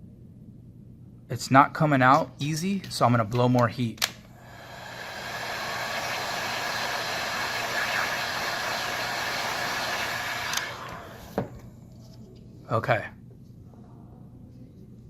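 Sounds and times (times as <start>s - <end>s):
heat gun blowing air: 4.4s - 11.6s.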